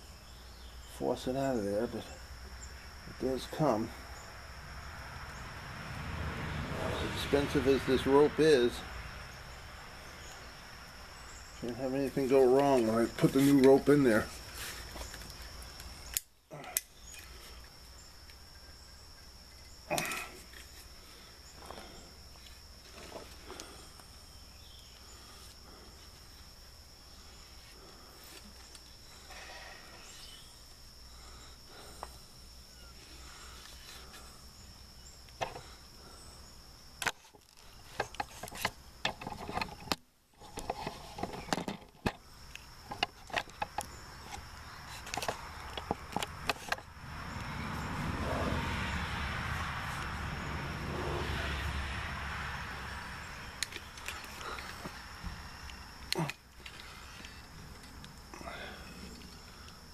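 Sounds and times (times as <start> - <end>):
hand tools clicking and scraping: 11.6 - 17.7, 37.0 - 46.9, 53.6 - 55.0, 55.7 - 59.8.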